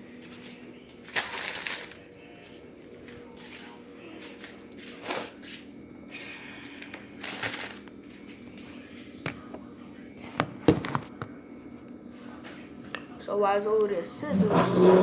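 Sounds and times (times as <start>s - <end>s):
paper packets crinkling: 1.0s - 3.2s, 6.6s - 8.4s.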